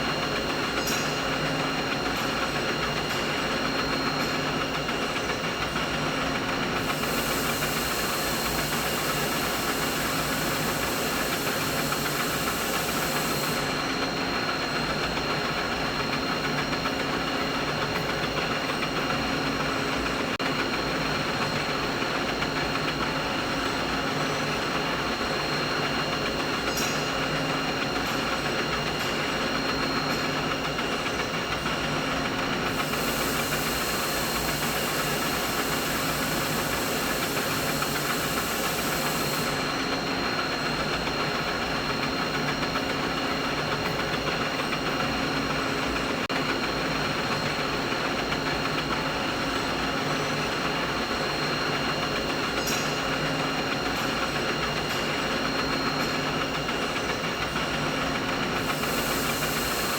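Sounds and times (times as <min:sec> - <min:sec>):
machinery droning: 0:06.7 - 0:14.4, 0:32.6 - 0:40.4
high hiss: 0:06.8 - 0:13.8, 0:32.7 - 0:39.8, 0:58.6 - 0:59.9.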